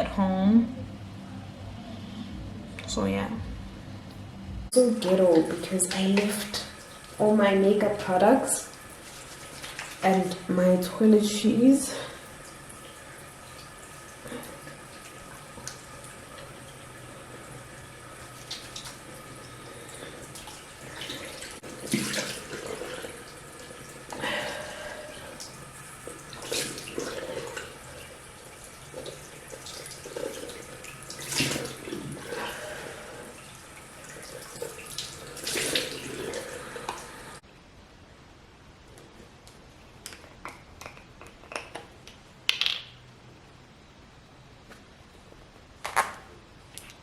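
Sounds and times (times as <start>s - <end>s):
tap water running into sink: 5.0s - 10.6s, 11.8s - 37.4s
hands splashing water: 20.3s - 23.1s, 29.0s - 32.0s.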